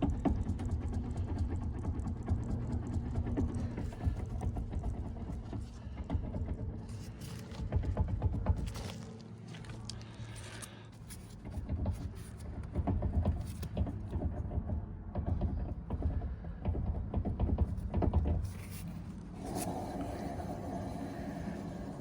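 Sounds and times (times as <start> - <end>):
car interior rumbling and droning: 0.0 - 22.0
irregular knocks: 11.4 - 19.5.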